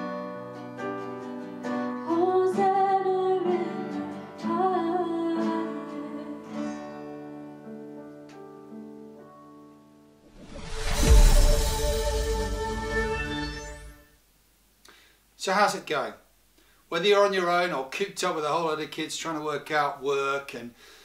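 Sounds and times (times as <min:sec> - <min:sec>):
acoustic guitar chords: 0:00.0 - 0:08.9
person singing: 0:02.0 - 0:06.5.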